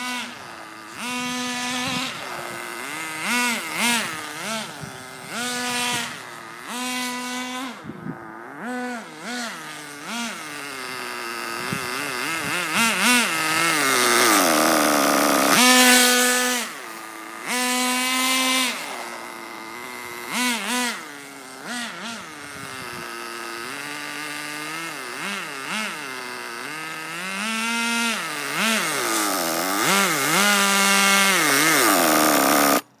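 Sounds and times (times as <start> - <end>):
rc car engine revving: 0.0 - 33.0.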